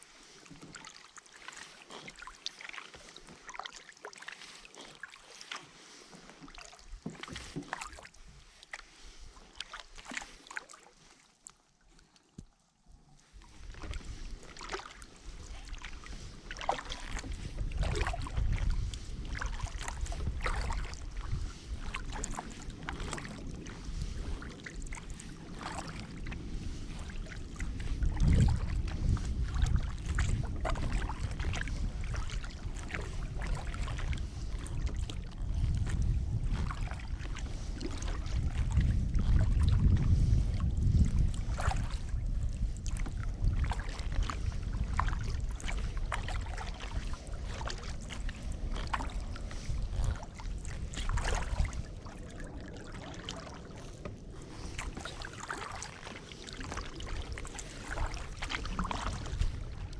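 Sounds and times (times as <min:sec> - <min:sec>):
paddle splashing in water: 0:00.0 - 0:59.9
wind on microphone: 0:13.4 - 0:59.9.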